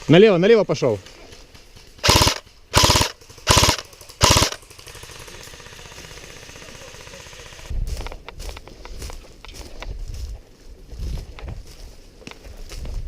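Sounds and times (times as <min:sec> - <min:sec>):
airsoft gun full-auto bursts: 0:01.8 - 0:07.7.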